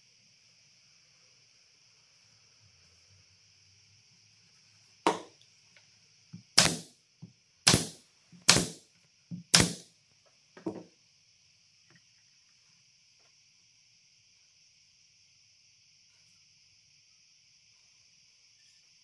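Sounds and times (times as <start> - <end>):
hard knocks on wood: 5.1 - 5.3, 7.7 - 9.8.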